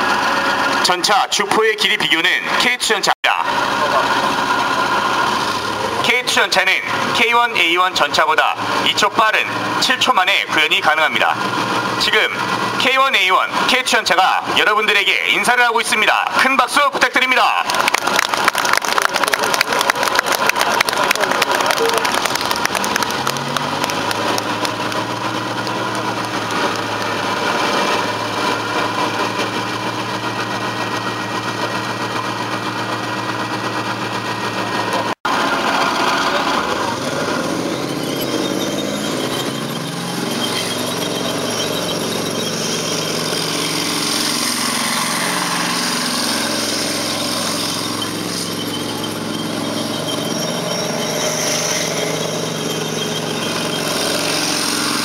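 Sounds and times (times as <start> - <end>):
tank engines droning: 0.0 - 55.0
high whine: 19.2 - 55.0.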